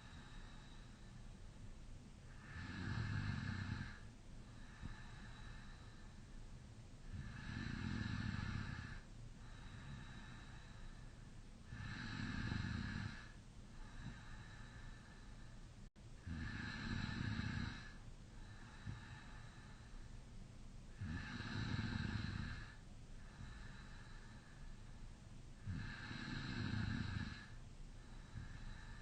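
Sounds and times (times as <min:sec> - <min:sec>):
quiet breathing: 0:00.0 - 0:29.0
person snoring: 0:02.3 - 0:04.0, 0:07.1 - 0:09.0, 0:11.7 - 0:14.6, 0:16.2 - 0:19.3, 0:21.0 - 0:22.8, 0:25.6 - 0:27.6.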